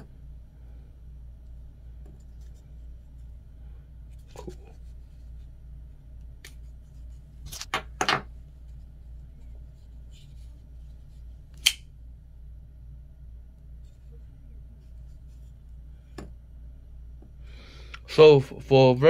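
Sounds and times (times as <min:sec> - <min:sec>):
folding knife clicking: 0:11.6 - 0:11.8.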